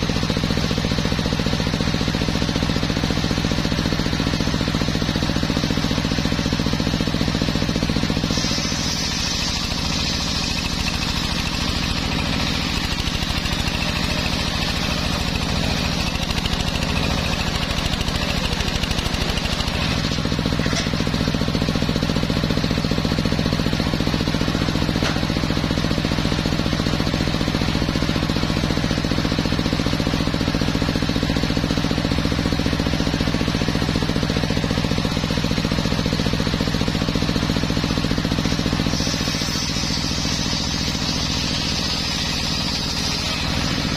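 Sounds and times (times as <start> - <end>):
circular sawmill sawing wood: 0.0 - 43.9.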